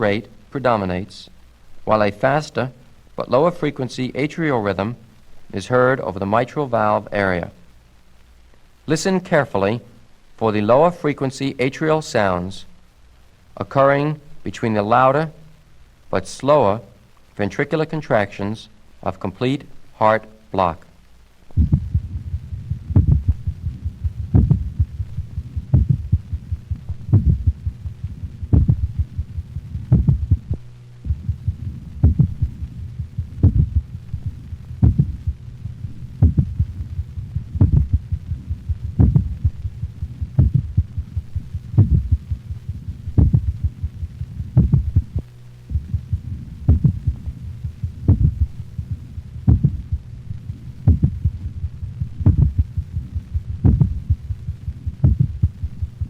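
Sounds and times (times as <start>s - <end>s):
faint low heart sounds: 21.4s - 56.0s
loud slow heartbeats: 21.5s - 56.0s.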